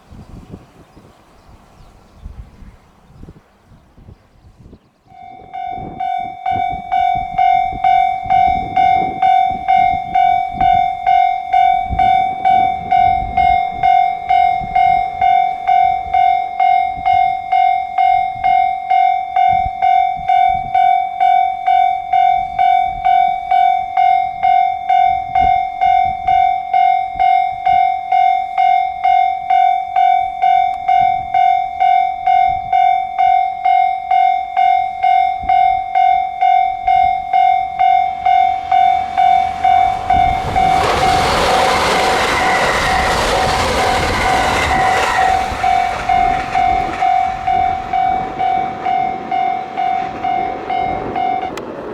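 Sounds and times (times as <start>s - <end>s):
level crossing bell dinging: 5.2s - 40.9s, 45.9s - 51.6s
low irregular rumble: 35.5s - 51.9s.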